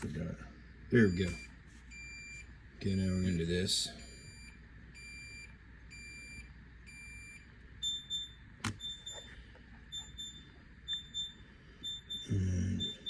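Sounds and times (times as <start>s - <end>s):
refrigerator control panel beeping: 1.0s - 2.4s, 4.1s - 13.0s.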